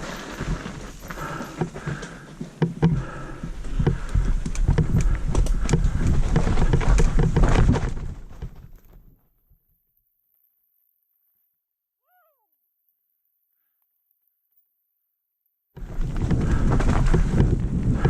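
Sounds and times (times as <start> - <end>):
bike rattling over roots: 0.0 - 9.2, 15.8 - 18.0.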